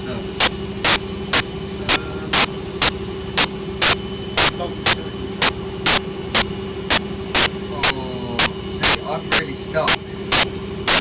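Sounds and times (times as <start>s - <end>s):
washing machine running: 0.0s - 11.0s.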